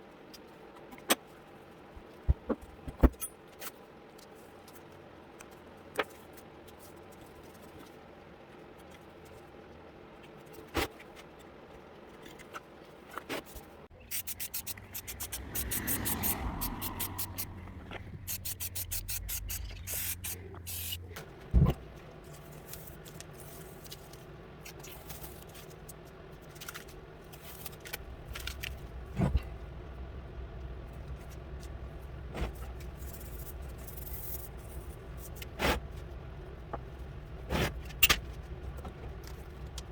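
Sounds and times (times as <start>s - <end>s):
steady low hum: 13.9s - 39.9s
rapid ticking and scraping: 14.0s - 39.9s.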